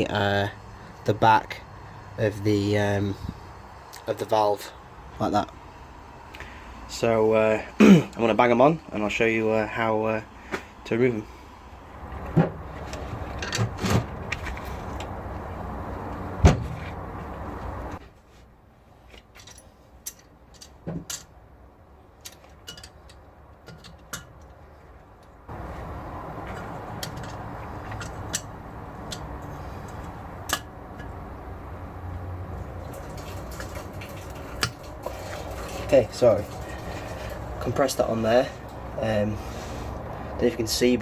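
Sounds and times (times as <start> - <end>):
metal clinks and knocks: 19.2 - 21.4.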